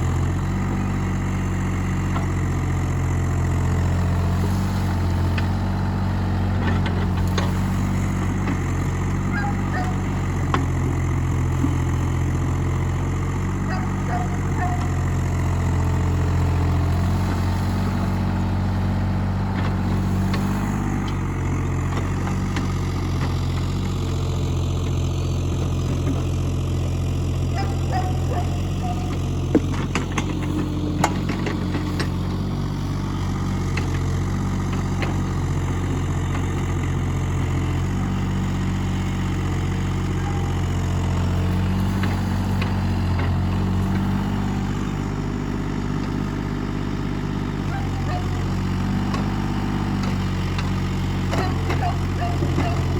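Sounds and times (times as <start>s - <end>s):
mini excavator engine running: 0.0s - 52.9s.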